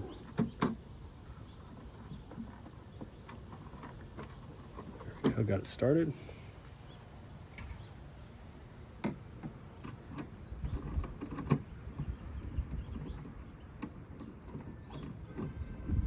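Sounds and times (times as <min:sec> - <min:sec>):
wind buffeting microphone: 0:10.3 - 0:16.0.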